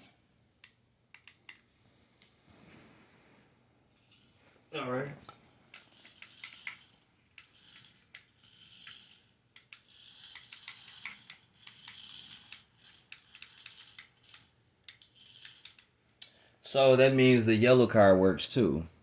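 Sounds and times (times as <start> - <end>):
small clicks and taps: 0.6 - 2.3
toy car motor whirring: 5.6 - 16.0.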